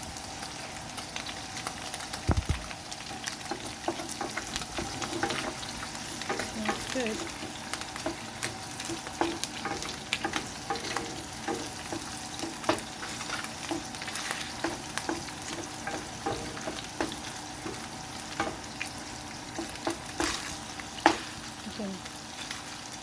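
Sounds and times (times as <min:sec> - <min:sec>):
garlic sizzling in hot oil: 0:00.0 - 0:23.0
utensil scraping a pan: 0:03.4 - 0:18.9, 0:19.5 - 0:21.4.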